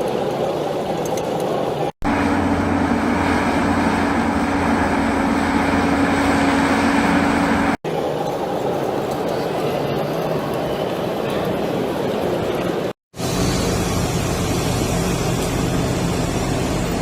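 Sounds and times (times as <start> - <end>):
truck engine rumble: 1.5 - 7.8, 13.2 - 17.0.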